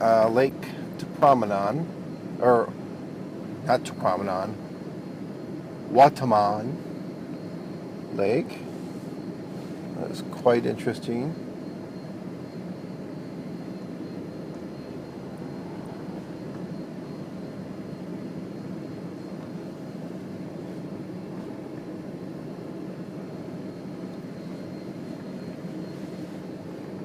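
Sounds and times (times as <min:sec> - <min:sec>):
vehicle engine and road noise: 0:13.4 - 0:22.4.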